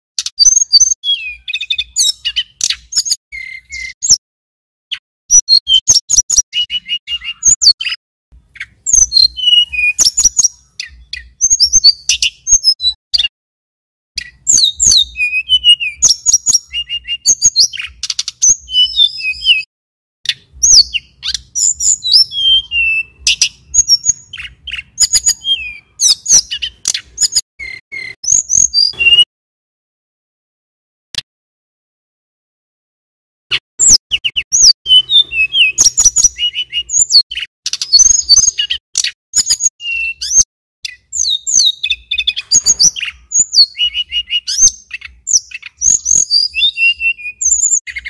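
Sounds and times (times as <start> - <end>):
flycatcher singing whistled trills: 8.6 - 13.3, 14.2 - 19.7, 20.3 - 29.3, 33.8 - 48.0.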